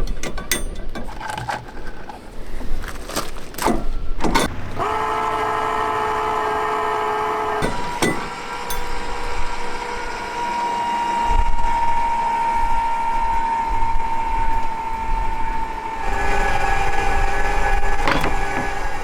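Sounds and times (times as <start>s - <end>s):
electric jack motor whining: 3.8s - 19.0s.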